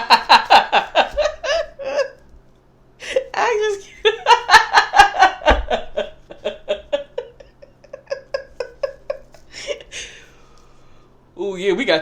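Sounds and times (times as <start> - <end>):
person laughing: 0.0 - 2.3, 3.0 - 10.3.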